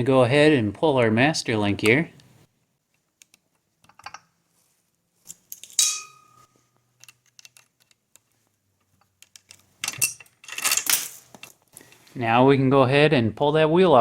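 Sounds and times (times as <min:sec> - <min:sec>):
bright ringing metal clink: 0:05.7 - 0:06.5.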